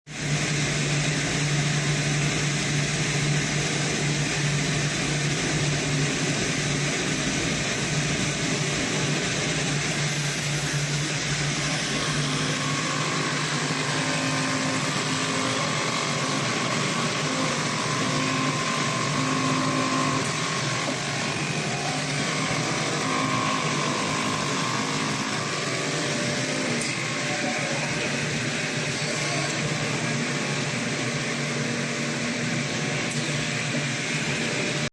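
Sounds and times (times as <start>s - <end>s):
cutting machine hum and hiss: 0.1s - 34.9s
high machine tones: 0.2s - 34.9s.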